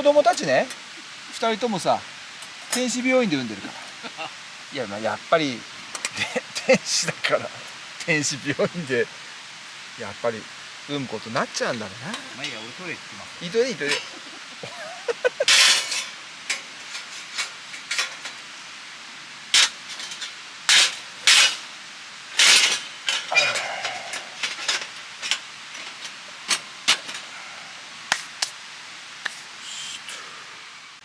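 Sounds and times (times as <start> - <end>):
river rushing: 0.0 - 31.0
camping gear clicking and clinking: 11.8 - 18.6, 19.6 - 21.7, 22.3 - 27.3.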